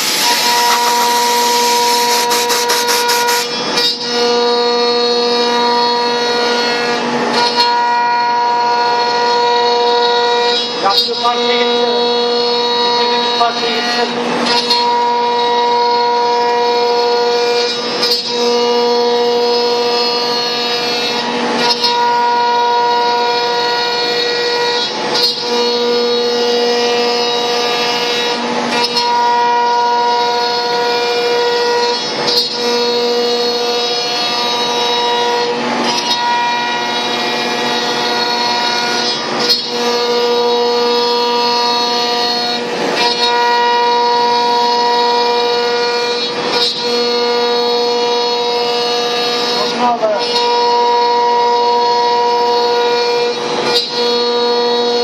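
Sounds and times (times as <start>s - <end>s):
cutting noise: 0.0s - 3.6s
router spindle whining: 0.0s - 7.4s, 8.2s - 55.0s.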